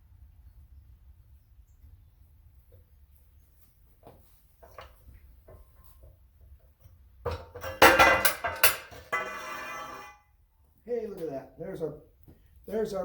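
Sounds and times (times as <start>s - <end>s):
metal pipe clanging on ground: 7.3s - 10.2s
metal pipe ringing: 7.6s - 10.2s.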